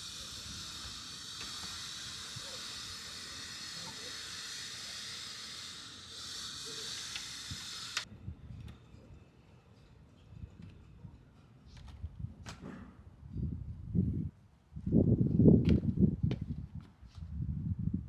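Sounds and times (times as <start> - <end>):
steady hiss: 0.0 - 8.1.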